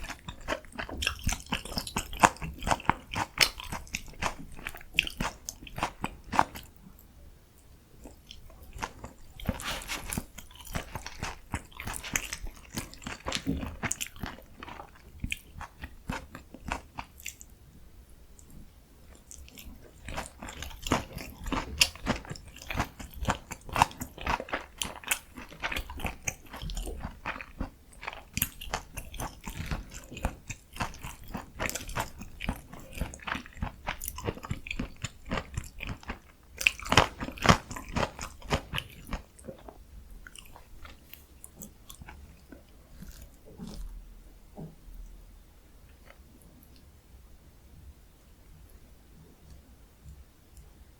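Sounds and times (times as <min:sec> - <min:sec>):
chewing: 0:00.0 - 0:06.7, 0:08.0 - 0:17.5, 0:18.4 - 0:44.0
crisp crunching of fried food: 0:00.0 - 0:06.7, 0:08.0 - 0:17.4, 0:19.4 - 0:43.9.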